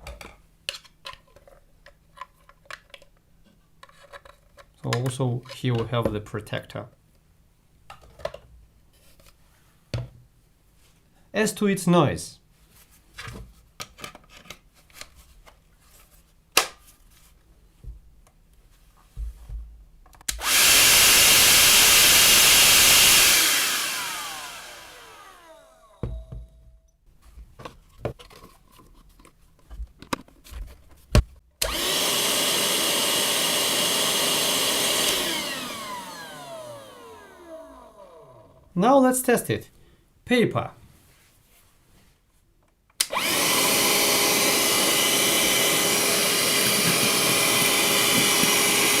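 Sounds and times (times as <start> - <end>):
handheld vacuum cleaner running: 20.3 - 26.5, 31.6 - 38.6, 43.1 - 49.0.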